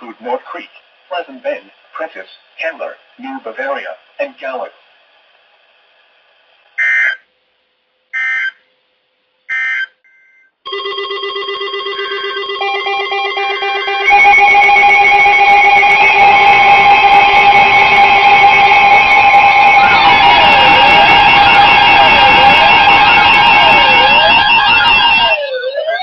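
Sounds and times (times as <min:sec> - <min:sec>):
pulsing beep: 0:06.8 - 0:07.2, 0:11.9 - 0:26.0
warning alarm tone: 0:06.8 - 0:07.2, 0:08.2 - 0:08.6, 0:09.5 - 0:26.0
weather alert radio alarms: 0:06.8 - 0:07.3, 0:08.2 - 0:08.6, 0:09.5 - 0:26.0
warbling data tones: 0:10.7 - 0:26.0.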